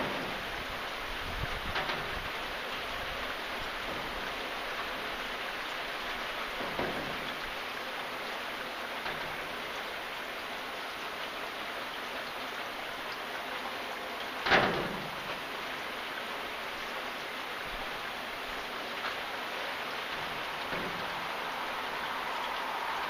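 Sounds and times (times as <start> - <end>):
steady rain falling: 0.0 - 23.0
heavy drop splashing: 17.6 - 23.0.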